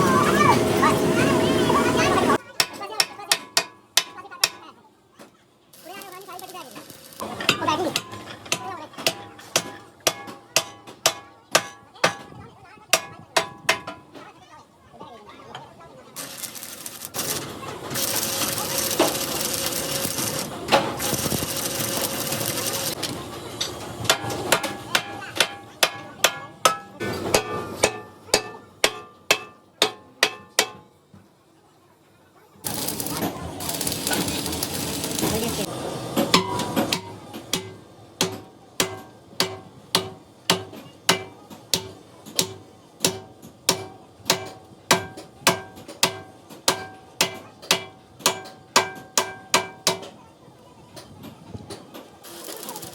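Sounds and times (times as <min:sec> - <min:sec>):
hammer striking steel: 0:02.6 - 0:04.6, 0:07.1 - 0:12.4, 0:13.0 - 0:14.1, 0:24.0 - 0:30.9, 0:36.2 - 0:50.2.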